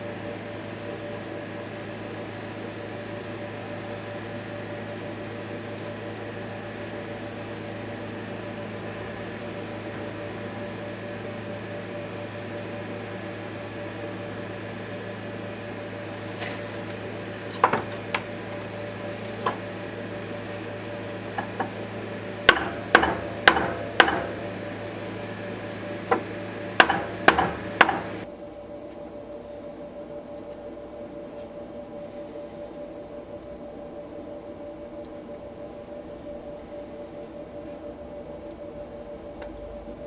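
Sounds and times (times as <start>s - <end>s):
workshop machine hum: 0.0s - 40.0s
hammer tapping workpiece: 22.5s - 24.4s, 26.1s - 28.2s.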